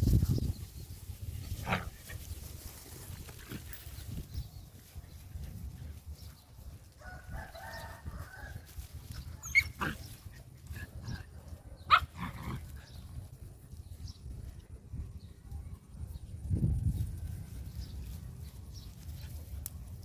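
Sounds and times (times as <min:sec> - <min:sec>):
dog barking: 0:11.9 - 0:12.1.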